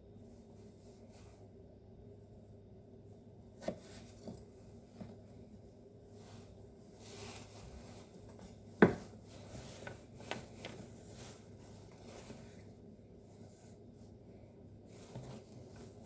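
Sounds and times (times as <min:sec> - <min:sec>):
knife knocking on cutting board: 0:08.8 - 0:09.1.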